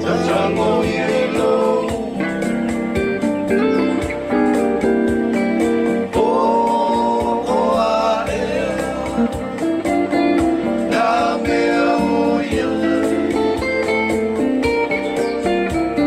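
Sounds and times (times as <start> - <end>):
people singing along: 0.0 - 2.8, 6.0 - 13.9
strummed guitar: 0.0 - 16.0.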